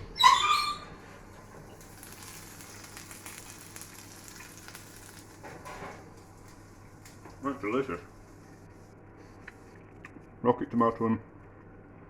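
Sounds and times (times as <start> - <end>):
food sizzling: 1.2 - 8.5.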